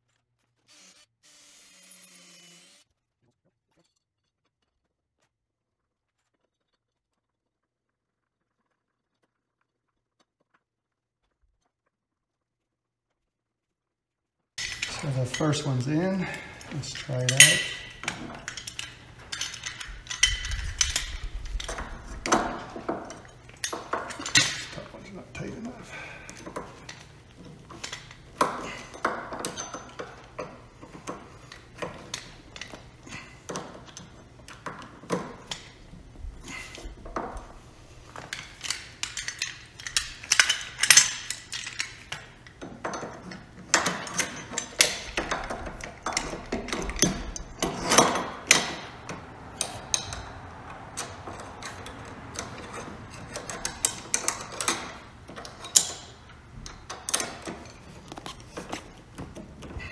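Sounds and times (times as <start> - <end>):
metallic clinks and knocks: 14.6 - 59.9.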